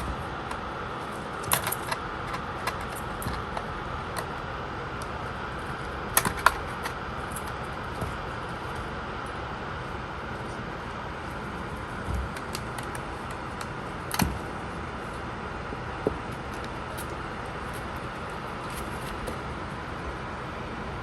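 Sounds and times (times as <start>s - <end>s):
kittens knocking a ball: 7.6s - 8.4s, 11.6s - 14.6s.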